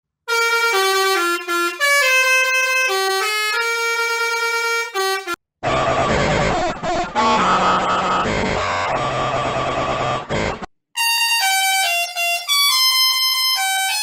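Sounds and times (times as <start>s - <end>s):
truck musical horn tune: 0.3s - 6.2s, 7.2s - 9.2s, 11.0s - 14.0s.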